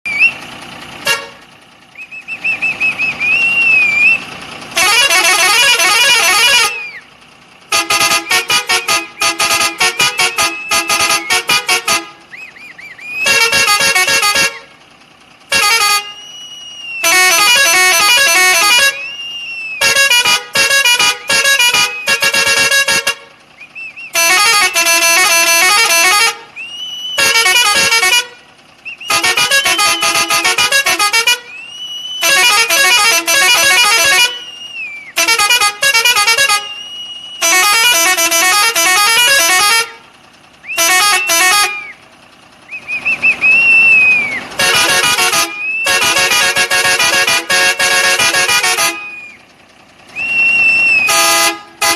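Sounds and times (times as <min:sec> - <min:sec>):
faint whistling tone: 0:00.1 - 0:00.5, 0:01.9 - 0:04.3, 0:12.3 - 0:13.3, 0:16.2 - 0:17.1, 0:19.0 - 0:19.8, 0:23.6 - 0:24.2, 0:26.6 - 0:27.2, 0:28.8 - 0:30.1, 0:31.5 - 0:32.2, 0:34.4 - 0:35.2, 0:36.8 - 0:37.4, 0:42.7 - 0:44.5, 0:45.6 - 0:45.9, 0:49.1 - 0:49.5, 0:50.1 - 0:51.1
truck horn blasts: 0:00.1 - 0:51.9.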